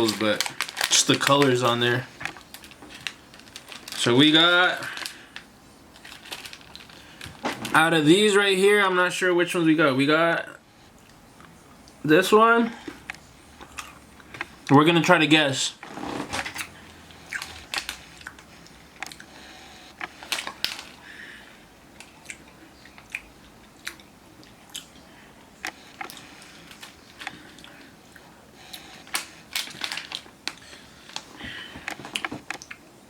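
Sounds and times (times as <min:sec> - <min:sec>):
person chewing crunchy candy: 0:12.9 - 0:14.6, 0:15.9 - 0:21.1, 0:22.0 - 0:32.8.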